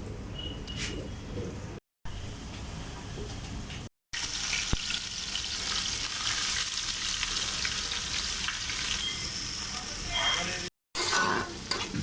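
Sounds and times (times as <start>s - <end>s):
spices sizzling in hot oil: 4.2s - 12.0s.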